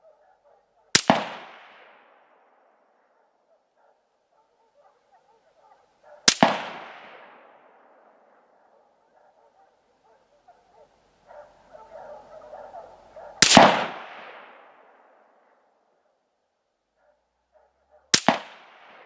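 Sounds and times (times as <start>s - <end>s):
rifle shots with echo: 0.9s - 2.7s, 6.2s - 8.4s, 13.2s - 15.3s, 18.1s - 19.0s.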